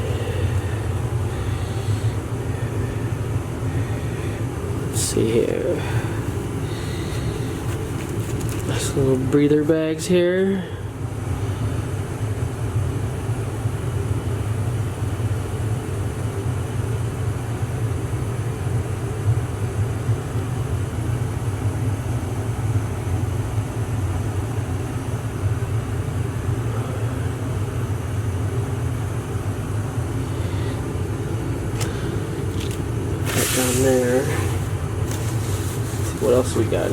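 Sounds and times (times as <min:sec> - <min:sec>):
low mechanical hum: 0:00.0 - 0:36.9.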